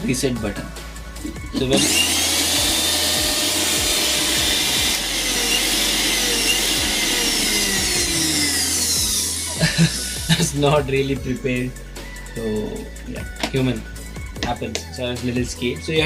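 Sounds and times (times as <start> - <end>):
mixer grinder motor whirring: 1.6 - 10.3.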